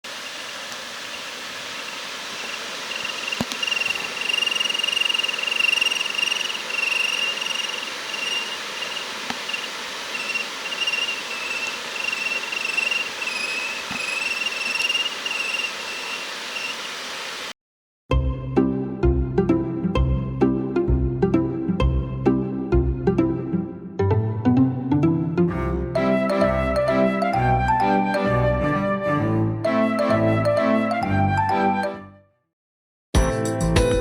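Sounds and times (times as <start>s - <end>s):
fan airflow hissing: 0.1s - 17.5s
high thin squeal: 2.3s - 17.5s
music: 18.1s - 32.4s, 33.2s - 34.0s.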